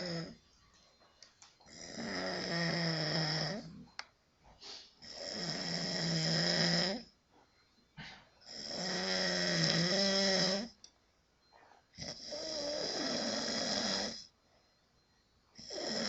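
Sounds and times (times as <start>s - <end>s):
man snoring loudly: 0.0s - 0.4s, 1.7s - 3.7s, 5.0s - 7.1s, 8.5s - 10.7s, 12.0s - 14.3s, 15.6s - 16.0s
breathing: 4.5s - 5.1s, 8.0s - 8.5s.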